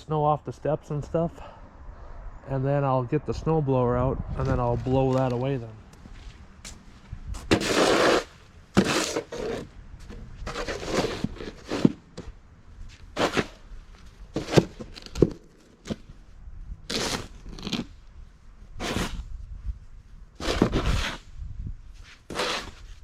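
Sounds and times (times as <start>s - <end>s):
snow shovel scraping snow: 7.5s - 9.7s, 10.4s - 12.0s, 13.2s - 13.7s, 16.9s - 17.9s, 18.8s - 19.3s, 20.4s - 21.3s, 22.0s - 23.0s.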